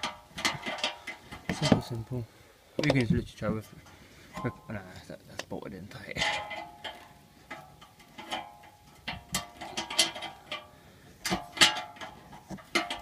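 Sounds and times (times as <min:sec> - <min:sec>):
metal clinks and knocks: 0:00.0 - 0:02.2, 0:06.1 - 0:13.0.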